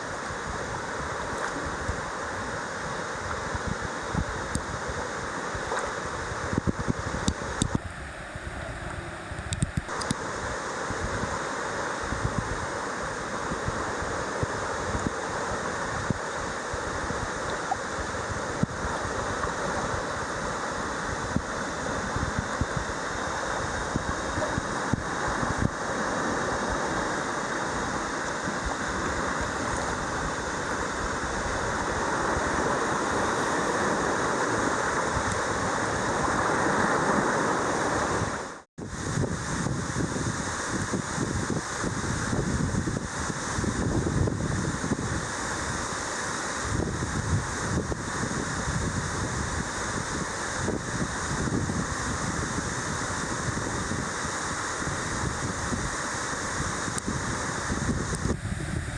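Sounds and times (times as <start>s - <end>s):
wind buffeting microphone: 6.2s - 10.2s, 13.5s - 45.3s, 46.7s - 58.9s
waterfall rushing: 7.3s - 39.6s.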